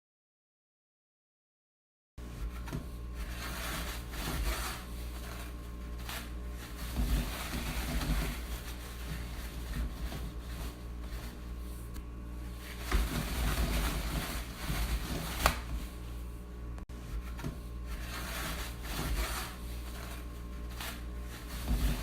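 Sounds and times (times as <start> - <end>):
toilet paper rustling: 2.2 - 22.0
paper snapping: 15.3 - 15.7.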